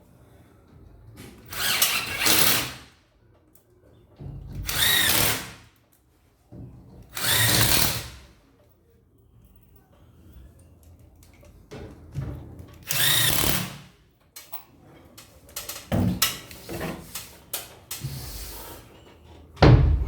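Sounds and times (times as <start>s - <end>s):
power drill driving screws: 1.5s - 2.8s, 4.6s - 5.6s, 7.2s - 8.2s, 12.9s - 13.8s.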